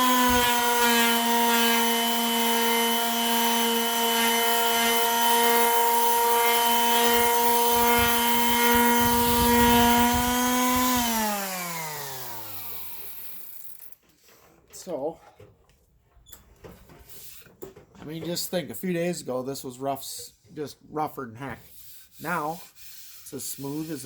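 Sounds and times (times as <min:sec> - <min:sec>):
electric sander on wood: 0:00.0 - 0:13.4.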